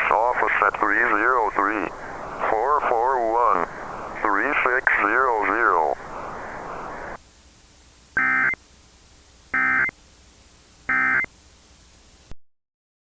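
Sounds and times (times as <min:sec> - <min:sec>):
digital data tone bursts: 0:08.2 - 0:08.6, 0:09.6 - 0:09.9, 0:10.9 - 0:11.3.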